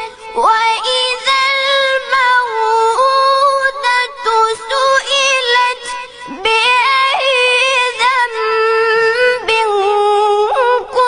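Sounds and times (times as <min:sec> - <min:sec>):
melodic recitation in high voice: 0:00.0 - 0:11.0.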